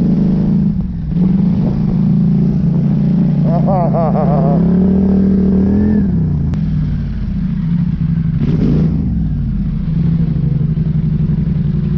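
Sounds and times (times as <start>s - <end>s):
atv engine running: 0.0s - 11.9s.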